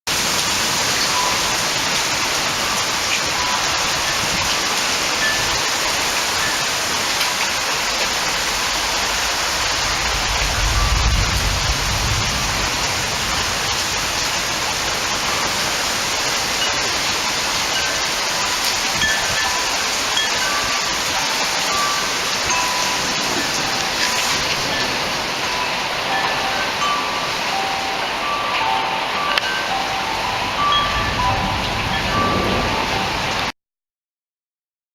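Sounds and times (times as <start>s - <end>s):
heavy rain falling: 0.1s - 33.5s
low rumble: 8.4s - 15.2s.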